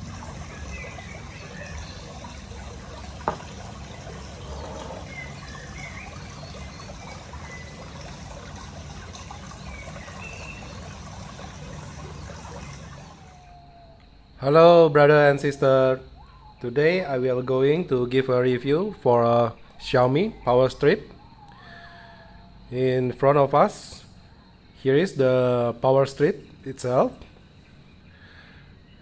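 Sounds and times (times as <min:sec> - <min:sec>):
faint high chirps: 0:00.0 - 0:14.1.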